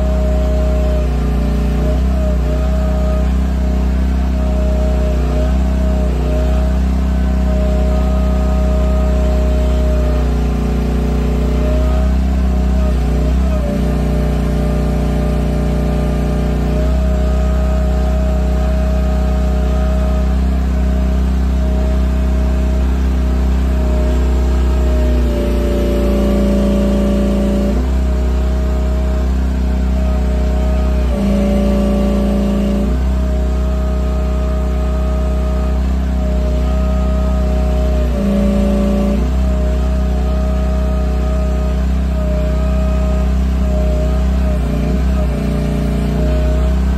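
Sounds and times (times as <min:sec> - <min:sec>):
mini excavator engine and hydraulics: 0:00.0 - 0:46.9.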